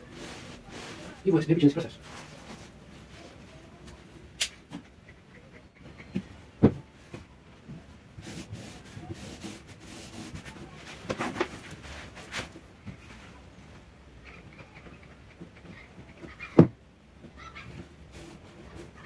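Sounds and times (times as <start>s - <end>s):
fabric rubbing and rustling: 0.0s - 3.6s, 8.2s - 13.5s.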